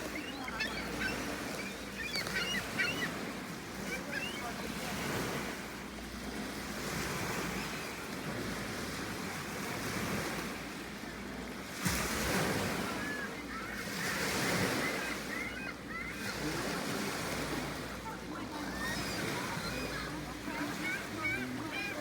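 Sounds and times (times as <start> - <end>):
gulls calling: 0.0 - 5.6, 12.4 - 22.0
surf: 0.0 - 22.0.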